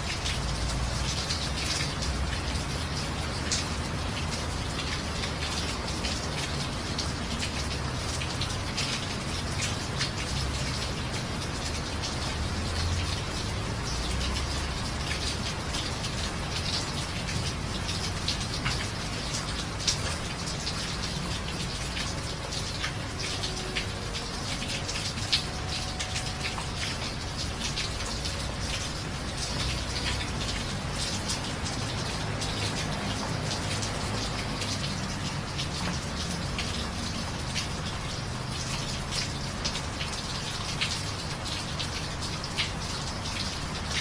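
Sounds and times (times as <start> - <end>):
steady rain: 0.0 - 44.0.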